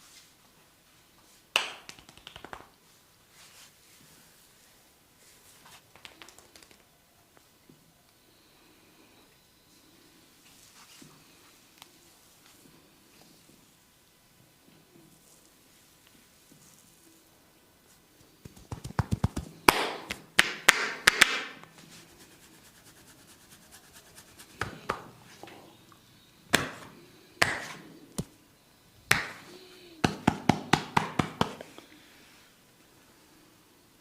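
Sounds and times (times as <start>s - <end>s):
hand slaps: 1.6s - 2.8s, 18.4s - 21.6s, 24.6s - 25.1s, 26.5s - 28.3s, 29.1s - 31.6s
hands tapping and chopping on body: 18.4s - 21.5s, 29.1s - 29.4s, 30.0s - 31.6s.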